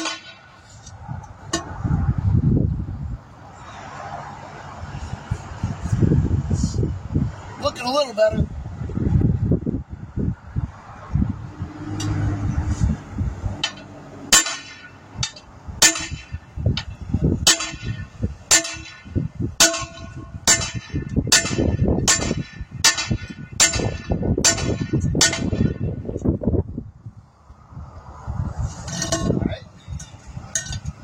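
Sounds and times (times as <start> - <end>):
hammer striking metal rim: 13.6 - 16.4, 17.4 - 25.9.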